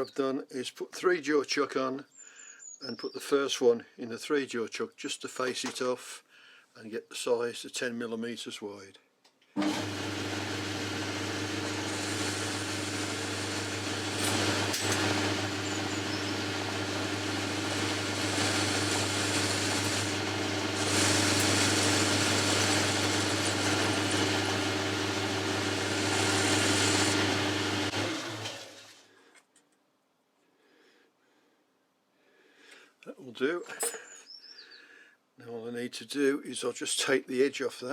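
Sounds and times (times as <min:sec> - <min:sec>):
lathe motor hum: 0:09.6 - 0:28.9
metal cutting hiss: 0:11.4 - 0:24.6.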